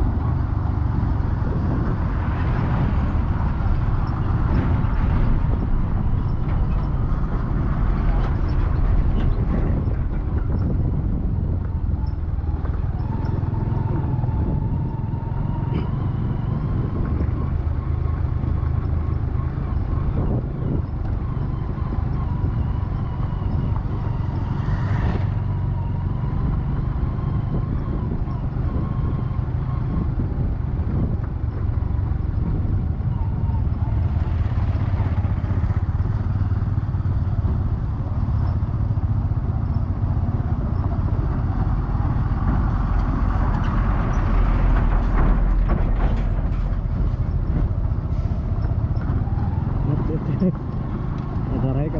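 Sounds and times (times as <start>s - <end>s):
road noise: 0.0s - 51.9s
vehicle engine rumble: 0.0s - 51.9s.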